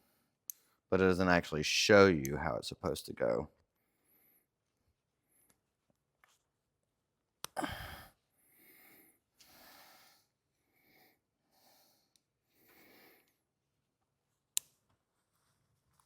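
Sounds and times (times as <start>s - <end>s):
man breathing: 3.8s - 4.5s, 7.6s - 13.4s
man sighing: 7.6s - 8.1s.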